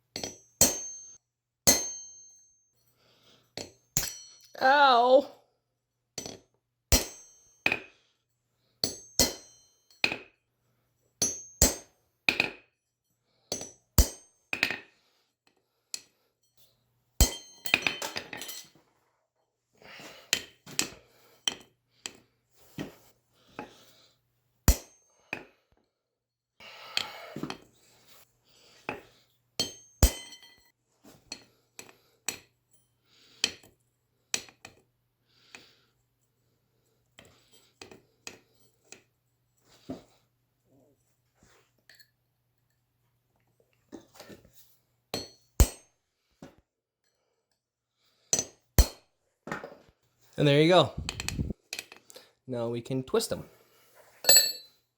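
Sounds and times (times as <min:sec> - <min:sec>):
hammer striking steel punch: 0:01.7 - 0:02.2, 0:06.9 - 0:07.4, 0:45.2 - 0:45.8.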